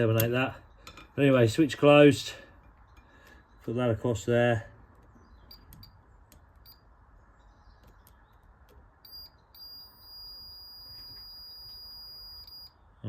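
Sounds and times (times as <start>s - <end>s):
steady high-pitched tone: 9.1s - 12.8s.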